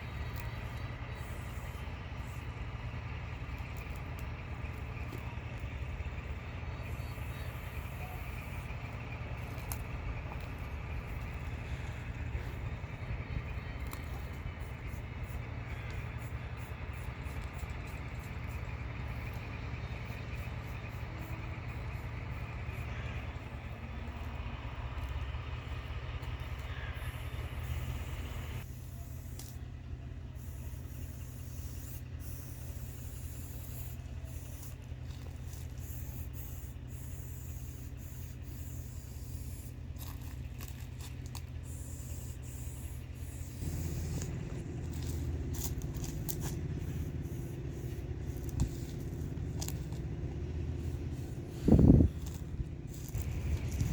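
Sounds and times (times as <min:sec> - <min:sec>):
low rumble: 0:00.0 - 0:53.9
spray-paint cans hissing: 0:30.4 - 0:50.0.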